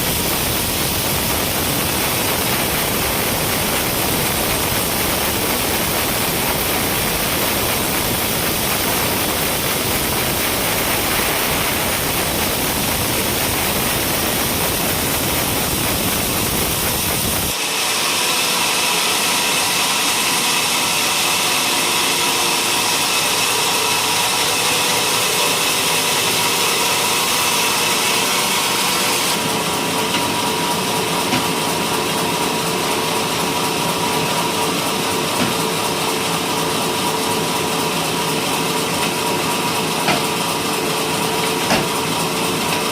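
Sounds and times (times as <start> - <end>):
sawmill machinery sawing timber: 0.0 - 42.9.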